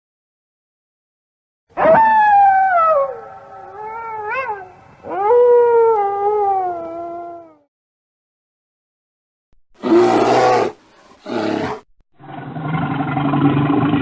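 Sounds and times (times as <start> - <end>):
animal crying with falling pitch: 1.8 - 7.7.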